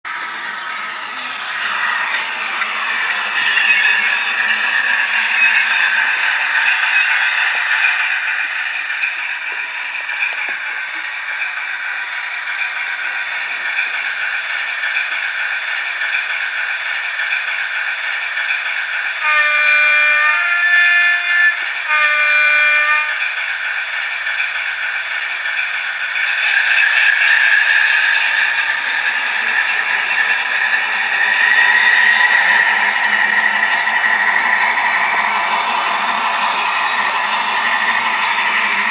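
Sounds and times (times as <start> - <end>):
locomotive horn: 19.2 - 23.2.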